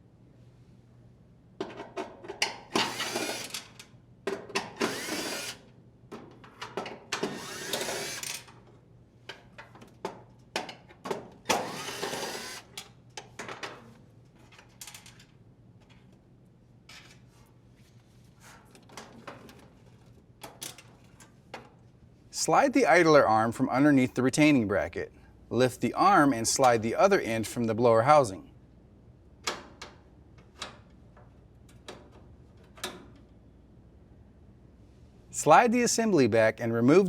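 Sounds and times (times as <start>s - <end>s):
drill driver whirring: 2.8s - 3.6s, 4.8s - 5.6s, 7.2s - 8.4s, 11.5s - 12.8s.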